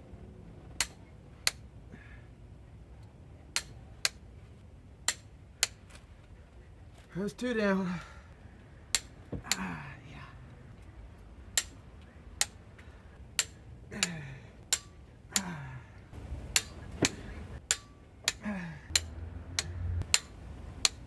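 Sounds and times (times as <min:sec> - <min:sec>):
person grunting: 0:13.9 - 0:14.4, 0:15.4 - 0:15.9, 0:18.4 - 0:18.9.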